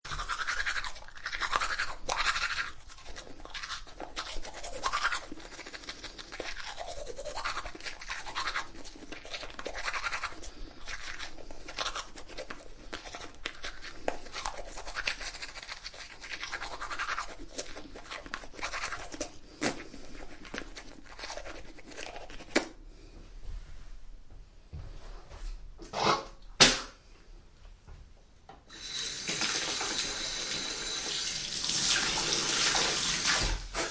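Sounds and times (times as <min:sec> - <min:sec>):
toothbrush scrubbing teeth: 0:00.0 - 0:22.8, 0:28.7 - 0:33.9.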